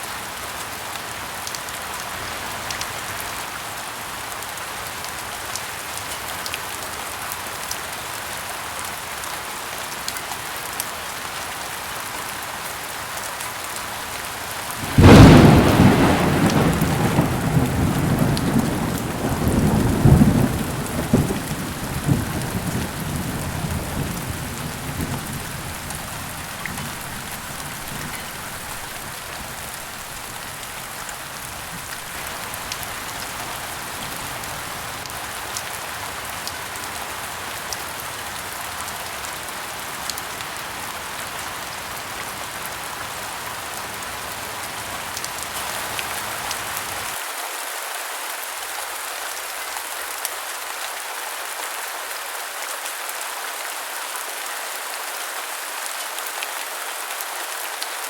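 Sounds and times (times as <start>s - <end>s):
heavy rain: 0.0s - 58.0s
thunder crack and rumble: 14.8s - 29.7s.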